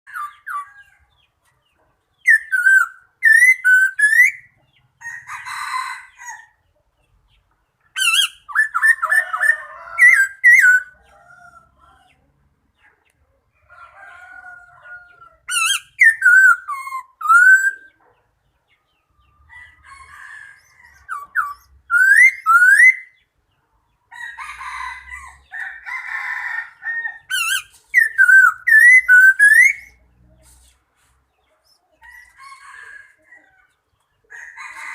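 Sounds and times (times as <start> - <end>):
bird whistled notes and trills: 2.2 - 4.6, 7.9 - 11.0, 15.5 - 18.0, 20.5 - 23.3, 27.2 - 30.0
harsh rasping bird calls: 2.2 - 6.5, 7.8 - 11.7, 13.7 - 18.3, 19.5 - 23.4, 24.1 - 34.9.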